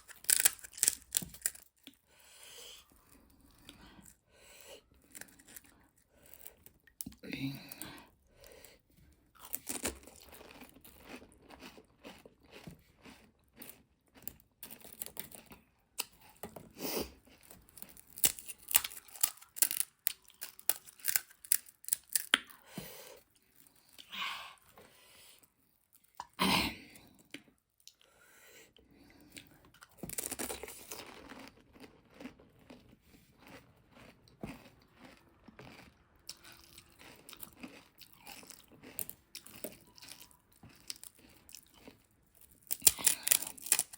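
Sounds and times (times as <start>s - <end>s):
crunching food: 0.0s - 2.0s, 4.8s - 8.1s, 8.7s - 24.8s, 29.1s - 43.9s
wet chewing: 29.2s - 43.9s.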